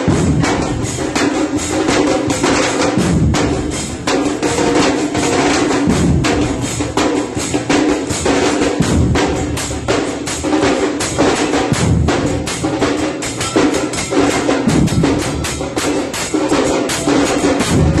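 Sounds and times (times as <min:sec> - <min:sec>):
bass drums playing: 0:00.0 - 0:01.2, 0:03.0 - 0:04.6, 0:05.9 - 0:07.0, 0:08.8 - 0:09.9, 0:11.7 - 0:12.6, 0:14.6 - 0:15.7, 0:16.9 - 0:18.0
heavy low drum boom: 0:03.0 - 0:04.1, 0:05.9 - 0:07.0, 0:08.8 - 0:09.8.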